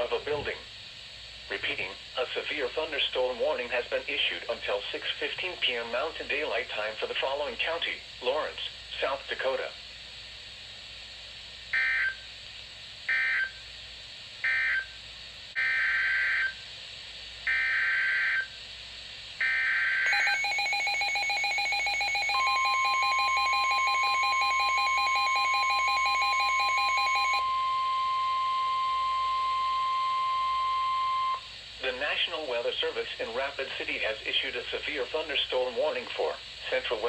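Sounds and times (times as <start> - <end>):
steady warning alarm tone: 11.7 - 12.2, 13.1 - 13.6, 14.4 - 15.0, 15.6 - 16.6, 17.5 - 18.6, 19.4 - 31.5
rapidly pulsing alert beep: 20.1 - 27.4.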